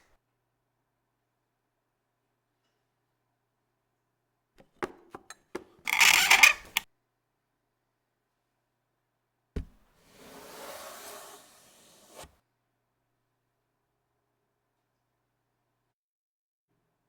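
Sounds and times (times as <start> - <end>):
thump: 9.6 - 9.8.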